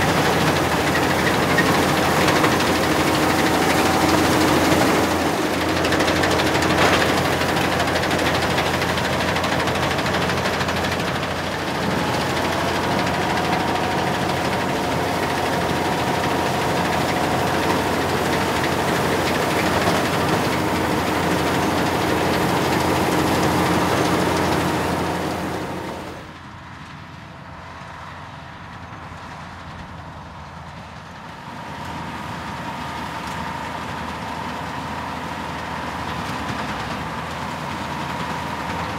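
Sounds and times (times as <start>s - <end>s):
machinery whining tones: 0.0s - 26.3s
combine harvester running: 0.0s - 38.9s.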